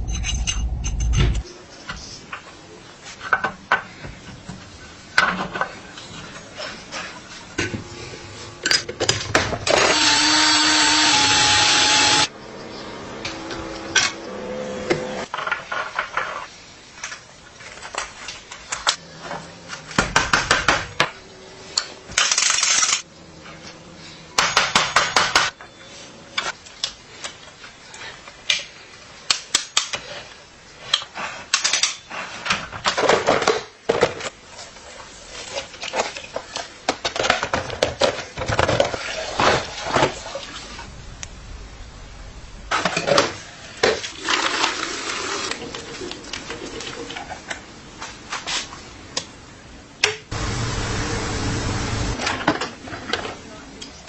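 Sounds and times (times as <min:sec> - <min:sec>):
metal tools clinking and scraping: 0:00.0 - 0:01.4.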